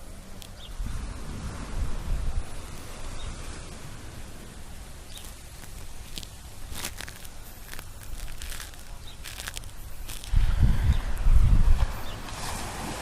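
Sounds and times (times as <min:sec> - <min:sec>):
ocean surf washing on beach: 0:00.0 - 0:13.0
footsteps in sand: 0:05.1 - 0:13.0.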